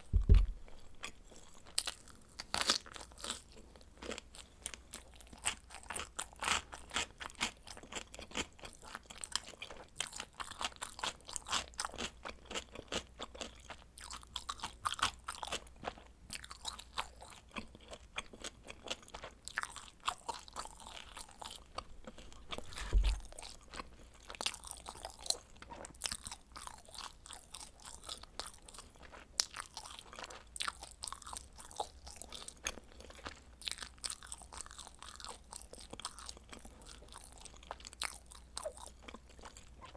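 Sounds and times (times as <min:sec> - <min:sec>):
low thump: 0:00.0 - 0:00.6, 0:22.6 - 0:23.3
chewing and crunching pizza: 0:00.0 - 0:39.9.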